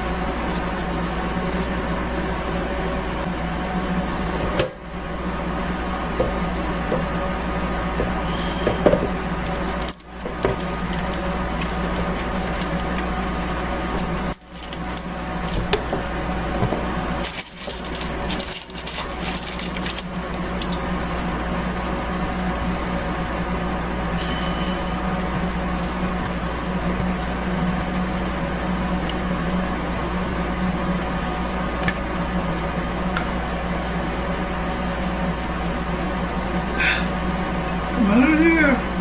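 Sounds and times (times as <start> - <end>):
food dehydrator humming: 0.0 - 39.0.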